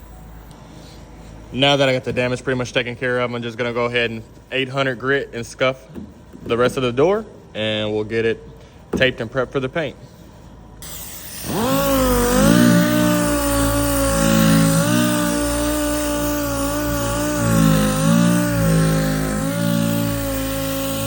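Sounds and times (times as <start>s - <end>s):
orbital sander whining: 10.8s - 21.0s.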